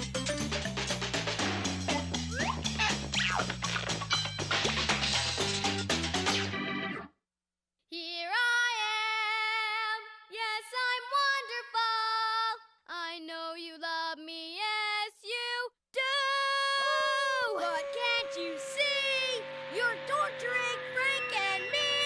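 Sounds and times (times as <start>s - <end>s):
girl singing unaccompanied: 7.9s - 22.0s
music cue: 17.5s - 22.0s.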